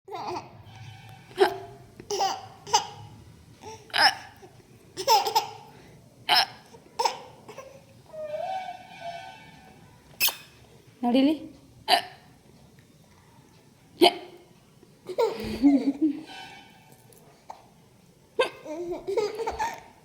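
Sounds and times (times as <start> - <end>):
baby giggling: 1.4 - 5.7, 6.3 - 8.5, 15.1 - 16.3, 18.4 - 20.0
baby hiccupping: 3.6 - 5.6, 6.3 - 8.4, 10.2 - 10.6
drawn-out baby voice: 7.0 - 9.8.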